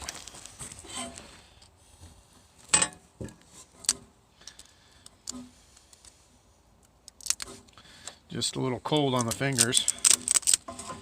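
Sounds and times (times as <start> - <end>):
metallic clicks on metal parts: 8.9 - 11.0.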